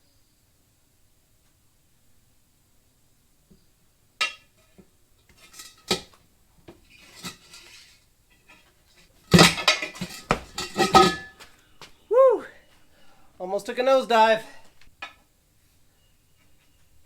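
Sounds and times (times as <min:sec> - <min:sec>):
metal tools clanking on rim: 0:04.2 - 0:06.2, 0:06.8 - 0:11.5.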